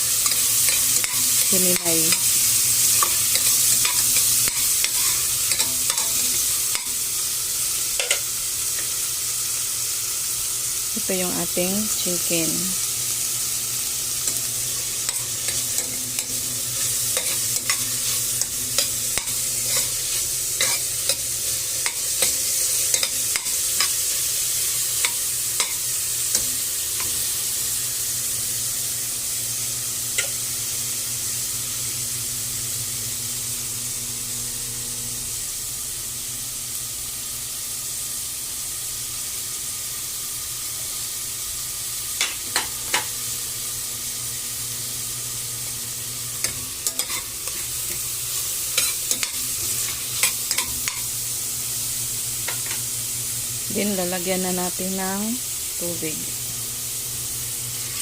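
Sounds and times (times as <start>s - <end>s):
food sizzling in oil: 0.0s - 58.0s
utensil scraping a pan: 15.1s - 21.2s.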